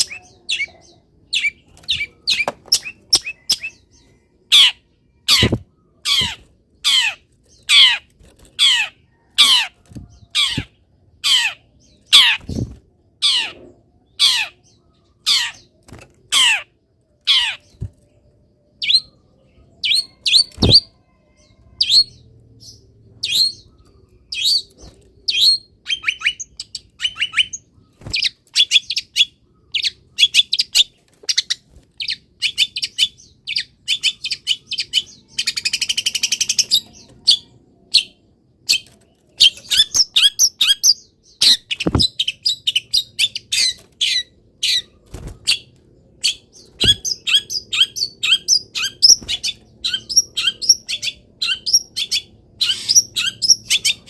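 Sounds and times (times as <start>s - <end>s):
bird singing chirps and whistles: 46.2s - 54.0s.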